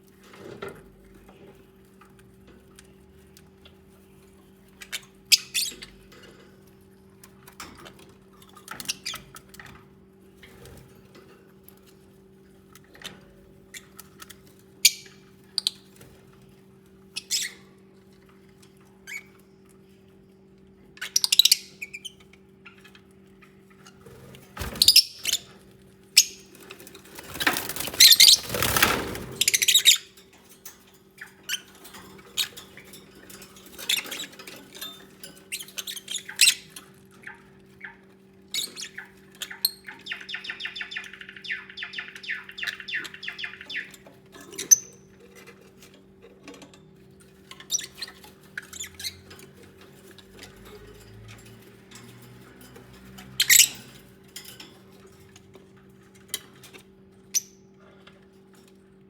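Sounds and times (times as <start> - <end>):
wings rustling and fluttering: 0.0 - 40.1, 42.6 - 59.0
lovebirds chirping: 14.8 - 15.9, 21.0 - 24.0, 24.7 - 26.6, 27.5 - 30.2, 33.8 - 45.0, 53.4 - 53.8.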